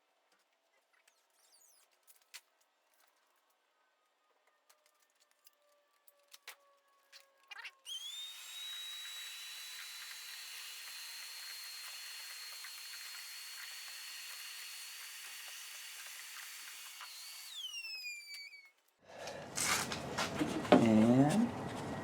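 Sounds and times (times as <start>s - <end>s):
vacuum cleaner running: 7.9s - 17.7s.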